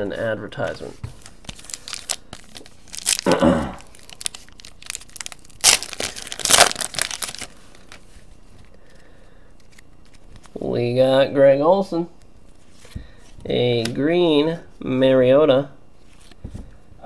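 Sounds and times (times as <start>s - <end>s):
card pack wrapper tearing: 1.2s - 8.0s.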